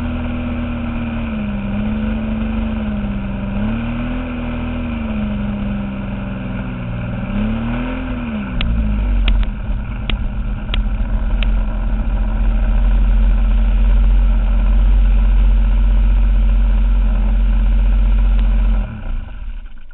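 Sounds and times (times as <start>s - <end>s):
heavy low rumble: 0.0s - 19.9s
model airplane engine running: 0.0s - 19.9s
sharp clicks: 8.6s - 11.6s.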